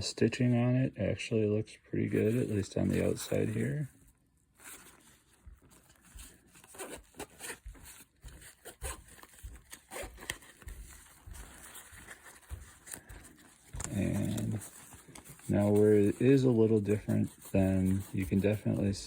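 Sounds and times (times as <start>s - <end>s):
cloth rustling: 2.0s - 19.0s.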